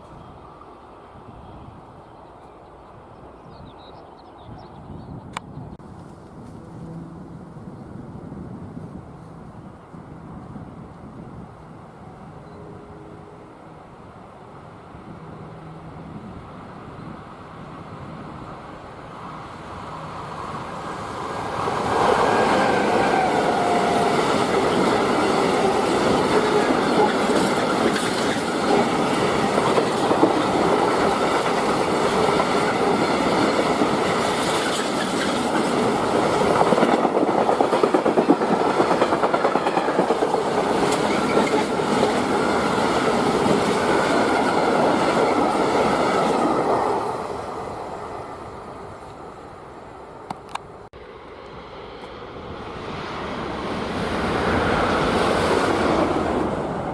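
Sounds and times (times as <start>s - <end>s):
train wheels clattering on rails: 21.7s - 47.2s.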